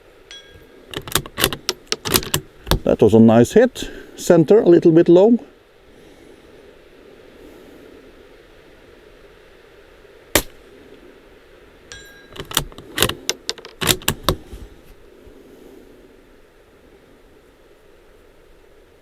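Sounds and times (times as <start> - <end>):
wind noise: 0.0 - 4.2, 5.9 - 19.0
faint ringing tone: 0.1 - 1.0, 11.9 - 12.5
rifle bolt metallic clicks: 0.3 - 2.9, 11.9 - 14.5
suppressed rifle shot: 10.3 - 10.6.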